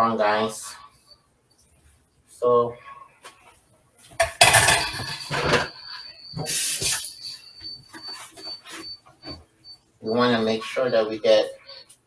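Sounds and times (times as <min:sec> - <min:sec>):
dishes and utensils clattering: 0:04.2 - 0:07.3.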